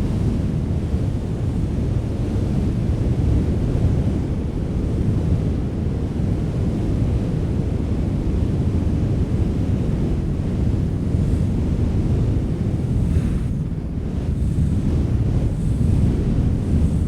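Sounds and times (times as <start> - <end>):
wind blowing: 9.4 - 17.0.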